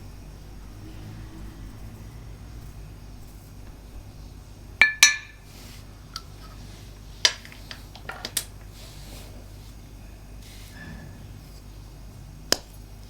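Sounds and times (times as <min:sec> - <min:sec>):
hard objects clinking: 0:04.8 - 0:05.5.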